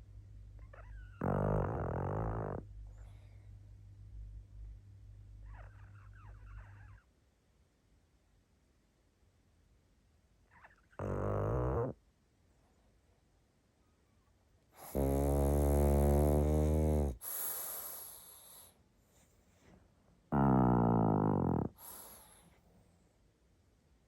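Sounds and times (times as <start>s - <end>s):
dog snoring: 0.6s - 3.3s, 5.4s - 7.0s, 10.5s - 12.0s, 14.8s - 18.7s, 20.3s - 22.6s
soft airy breath: 2.9s - 3.7s, 17.1s - 19.9s, 21.7s - 23.2s.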